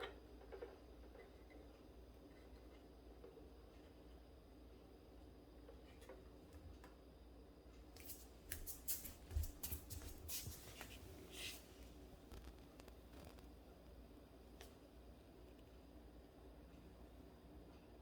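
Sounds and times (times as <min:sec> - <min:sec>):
small clicks and rustles: 0:08.0 - 0:13.6.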